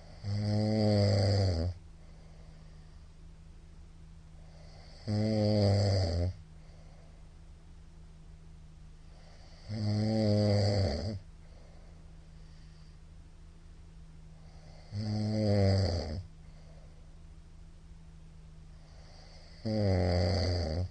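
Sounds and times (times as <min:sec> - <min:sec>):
man snoring loudly: 0:00.0 - 0:01.8, 0:04.5 - 0:06.4, 0:09.2 - 0:11.2, 0:14.5 - 0:16.3, 0:18.9 - 0:20.9
low steady hum: 0:00.0 - 0:20.9.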